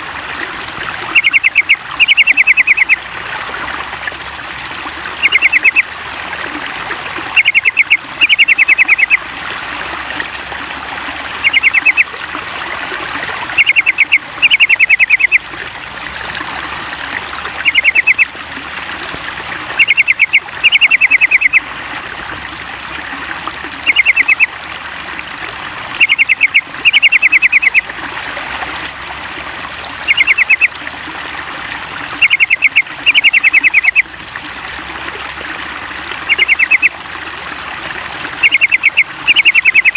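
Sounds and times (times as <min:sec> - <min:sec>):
running water trickling: 0:00.0 - 0:39.9
bird chattering song: 0:01.1 - 0:03.0, 0:05.2 - 0:05.8, 0:07.4 - 0:09.2, 0:11.4 - 0:12.0, 0:13.6 - 0:15.4, 0:17.6 - 0:18.3, 0:19.8 - 0:21.6, 0:23.8 - 0:24.5, 0:26.0 - 0:27.8, 0:30.0 - 0:30.7, 0:32.2 - 0:34.0, 0:36.3 - 0:36.9, 0:38.4 - 0:39.9.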